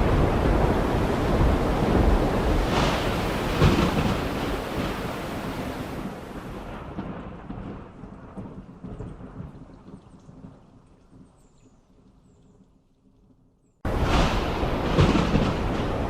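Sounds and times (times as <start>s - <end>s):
heavy rain: 0.0s - 10.6s, 13.9s - 16.0s
thunder rolling: 0.0s - 11.2s, 13.8s - 16.0s.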